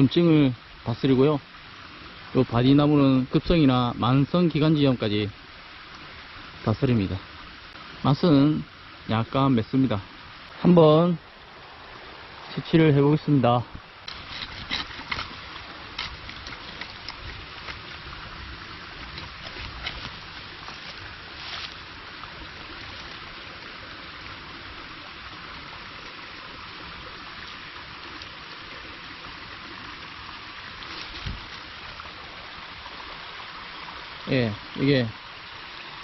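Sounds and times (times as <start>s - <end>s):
stream rushing: 0.0s - 36.0s
digging knocks and scrapes: 14.0s - 17.9s, 19.0s - 21.8s.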